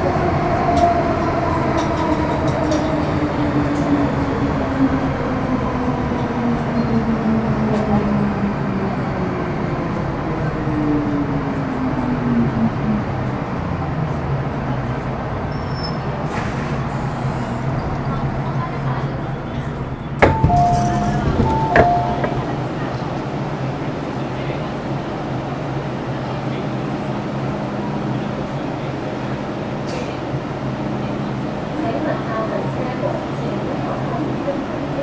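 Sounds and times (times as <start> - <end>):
wheel and track rumble: 11.9 - 35.0.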